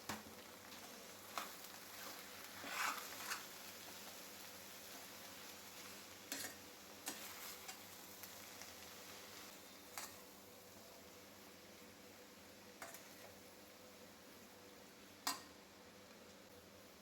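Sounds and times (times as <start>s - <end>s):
food sizzling in a pan: 0.0s - 17.0s
spoon clicking against pan: 15.2s - 15.5s.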